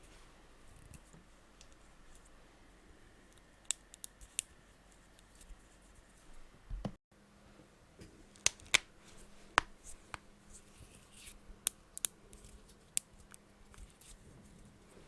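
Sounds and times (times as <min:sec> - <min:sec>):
knuckles cracking: 0:08.3 - 0:10.3.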